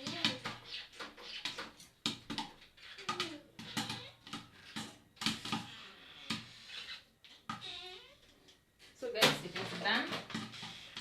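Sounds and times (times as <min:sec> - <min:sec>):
popcorn popping in a covered pot: 0:00.0 - 0:05.7.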